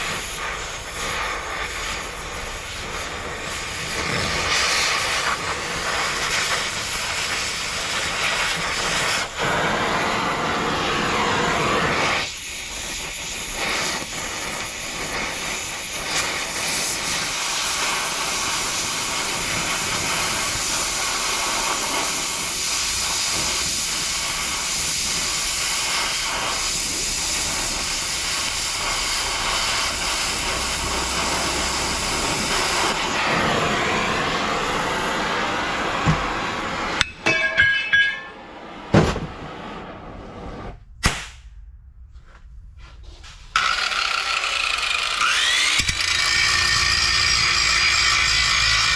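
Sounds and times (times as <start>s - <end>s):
power tool grinding steel: 43.5s - 48.9s.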